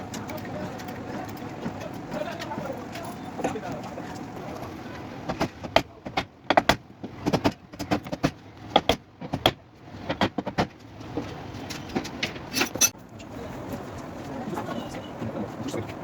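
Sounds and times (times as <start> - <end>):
knocks and taps on car body metal: 5.3 - 10.8.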